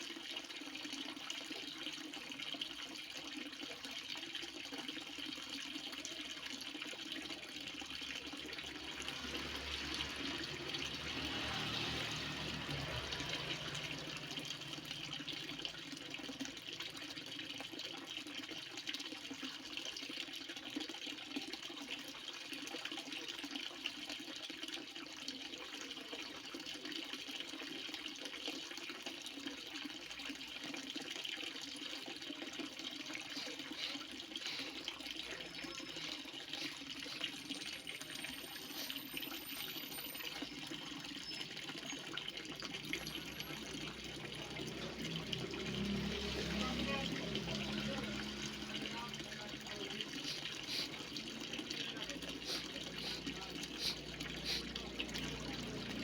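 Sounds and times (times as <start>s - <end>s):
heavy stream of water rushing: 42.6s - 56.0s.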